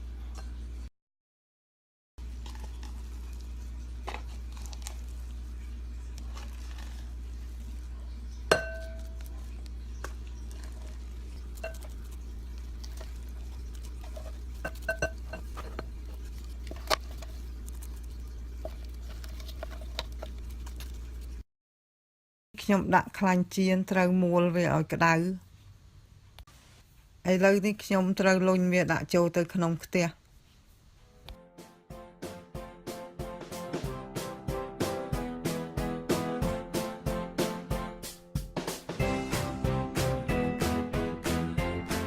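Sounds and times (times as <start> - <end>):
steady low hum: 2.2 - 21.4
utensils clinking on dishes: 8.5 - 9.2, 14.0 - 15.9.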